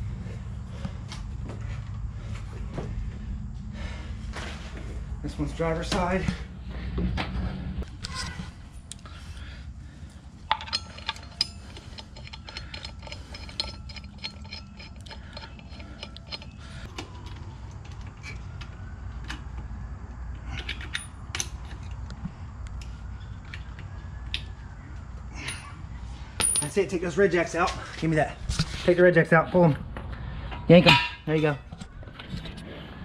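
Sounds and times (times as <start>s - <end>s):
steady low rumble: 0.0s - 33.0s
ratchet wrench clicking: 10.5s - 16.8s.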